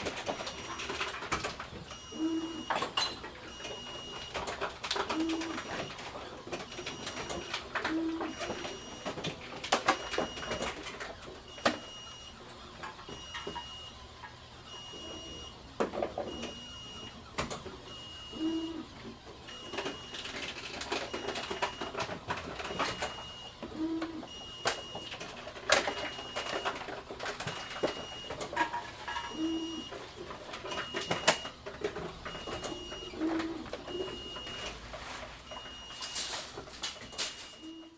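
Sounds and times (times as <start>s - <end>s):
faint high beep: 37.2s - 37.9s.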